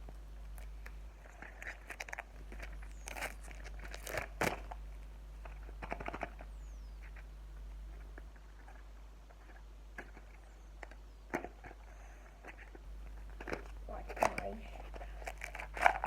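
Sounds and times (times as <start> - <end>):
wrapper crinkling as torn open: 1.3 - 4.8, 13.4 - 16.0.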